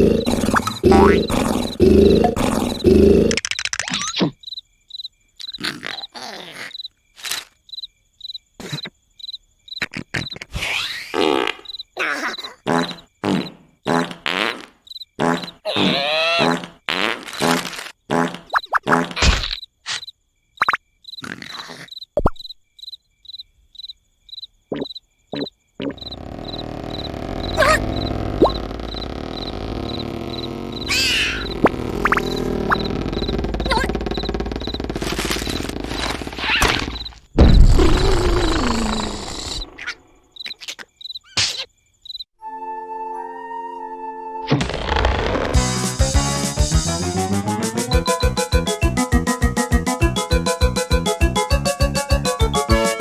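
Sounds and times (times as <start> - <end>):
cartoon snoring: 0.0 - 3.4, 5.5 - 6.8, 9.9 - 19.2, 21.2 - 21.9, 25.8 - 36.6, 37.6 - 39.9
crickets chirping: 0.0 - 16.0, 19.5 - 42.4
short sound effects: 25.9 - 39.6.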